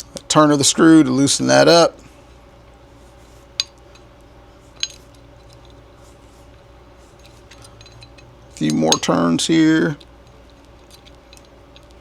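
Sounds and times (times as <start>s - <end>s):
faint steady hum: 0.0s - 12.0s
small metallic clicks: 9.9s - 12.0s.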